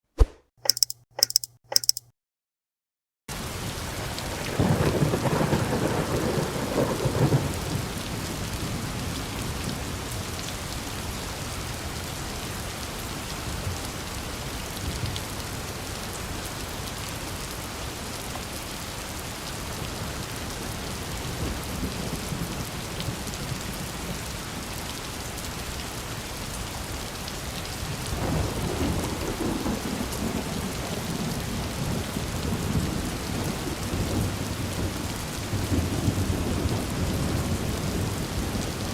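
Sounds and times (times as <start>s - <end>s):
rain falling: 3.3s - 38.9s
thunder rumbling: 4.3s - 8.0s.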